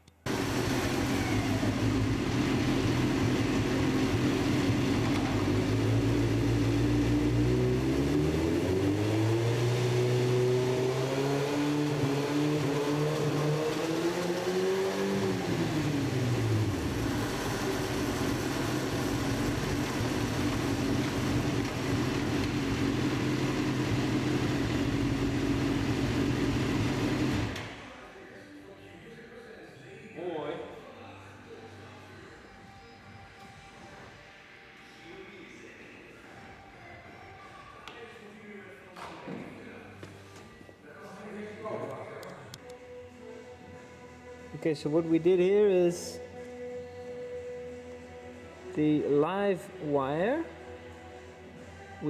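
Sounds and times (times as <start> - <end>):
motorcycle engine running: 0.3 - 27.6.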